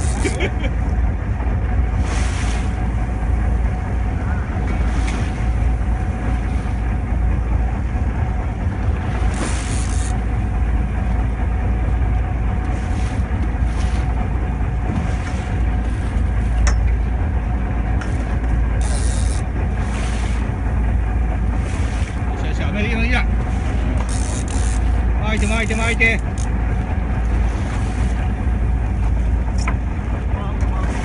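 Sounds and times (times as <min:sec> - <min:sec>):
boat engine droning: 0:00.0 - 0:31.0.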